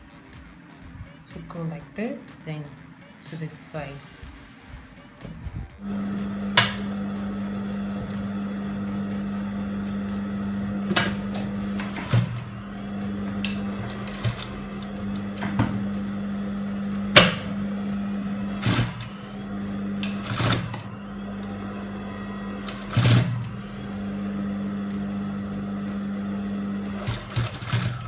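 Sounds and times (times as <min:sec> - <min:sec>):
sewing machine stitching: 0:05.8 - 0:28.0.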